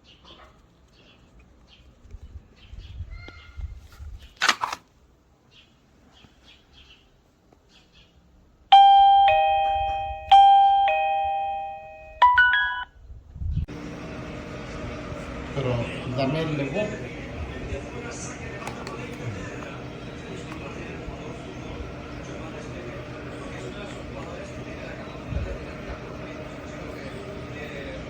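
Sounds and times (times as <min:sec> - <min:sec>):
electronic doorbell chime: 0:08.7 - 0:13.0.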